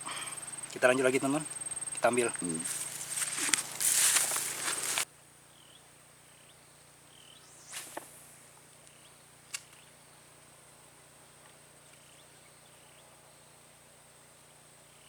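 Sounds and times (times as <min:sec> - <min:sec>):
high-pitched insect drone: 0:00.0 - 0:05.0.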